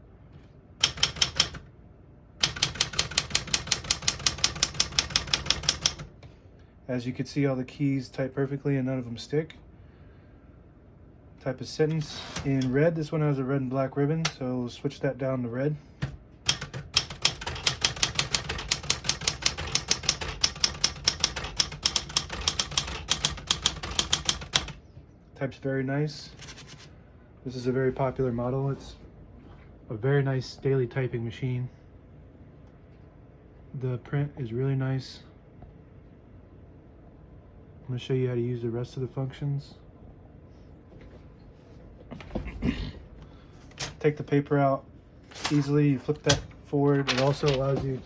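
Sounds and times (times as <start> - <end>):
manual typewriter keystrokes: 0.8 - 1.7, 2.4 - 6.1, 16.0 - 24.8, 43.7 - 44.0, 45.3 - 48.0.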